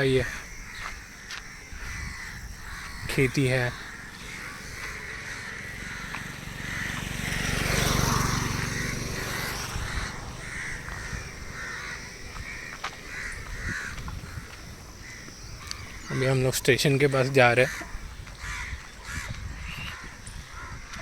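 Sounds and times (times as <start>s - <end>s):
crows cawing: 0.0s - 21.0s
rushing noise: 5.2s - 14.4s.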